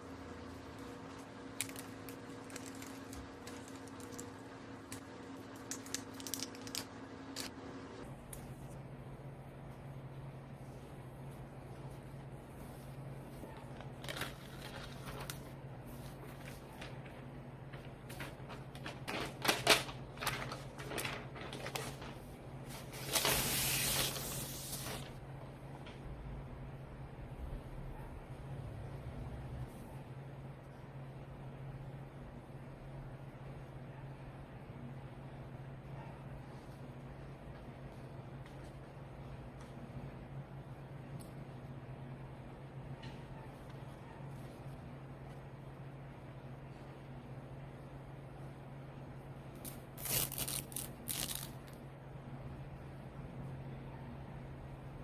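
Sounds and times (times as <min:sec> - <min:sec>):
faint steady hum: 0:00.0 - 0:55.0.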